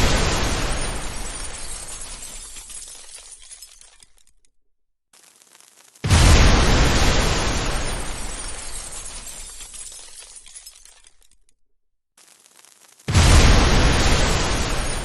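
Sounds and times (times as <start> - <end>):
loud explosion blast: 0.0 - 1.4, 6.1 - 8.5, 13.1 - 15.0
glass shattering: 0.0 - 4.5, 6.0 - 11.5, 14.0 - 15.0.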